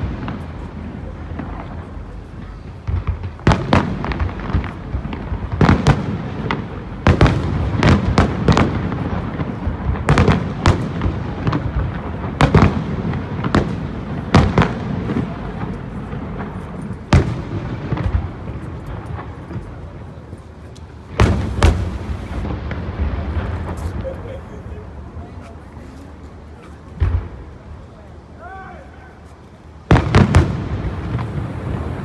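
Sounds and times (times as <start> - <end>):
fireworks crackling: 20.8 - 25.1, 29.9 - 32.0
fireworks banging: 21.1 - 24.4, 29.9 - 32.0
rumble of shell bursts: 21.2 - 22.5, 30.8 - 32.0.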